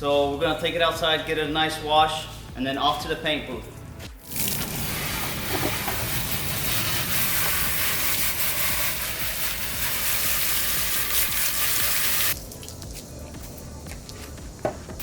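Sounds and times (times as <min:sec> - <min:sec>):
water spray hissing: 0:04.2 - 0:14.4.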